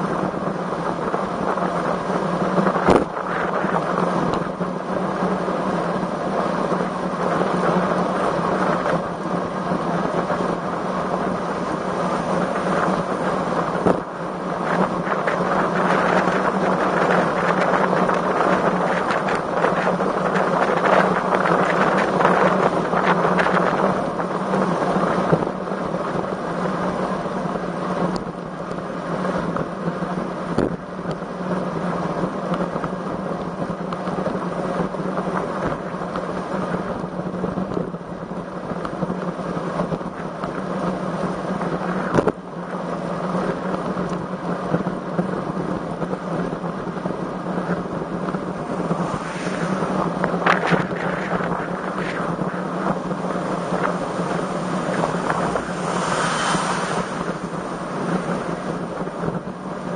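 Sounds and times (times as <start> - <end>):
wind rushing over microphone: 0.0 - 59.9
steady low hum: 34.6 - 59.9.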